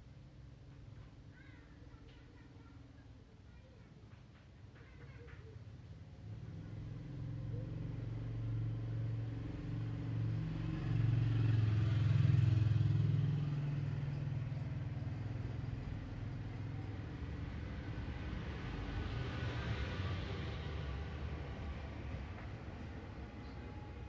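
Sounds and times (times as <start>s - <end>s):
vehicle engine passing by: 6.1s - 24.0s.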